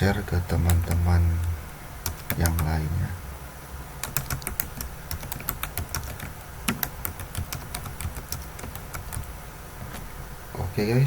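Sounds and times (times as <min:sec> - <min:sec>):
keyboard typing: 0:00.6 - 0:02.8, 0:04.0 - 0:10.0.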